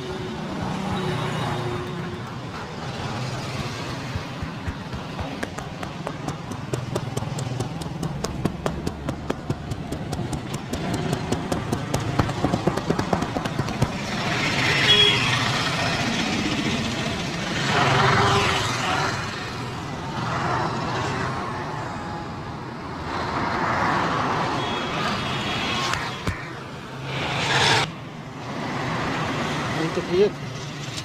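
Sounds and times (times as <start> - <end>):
street traffic: 0.0 - 31.0
vehicles passing loudly: 0.0 - 31.0
hands tapping in massage: 3.8 - 14.0.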